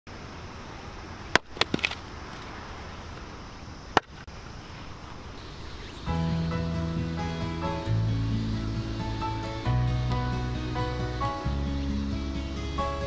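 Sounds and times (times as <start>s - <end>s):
axe chopping firewood: 1.3s - 2.0s, 3.9s - 4.3s
background music: 6.0s - 13.0s.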